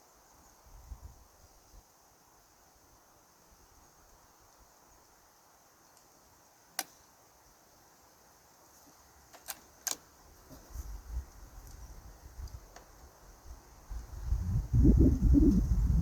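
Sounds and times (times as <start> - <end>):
insects droning: 0.0 - 16.0
rifle bolt clicks: 6.8 - 7.1, 9.4 - 10.1.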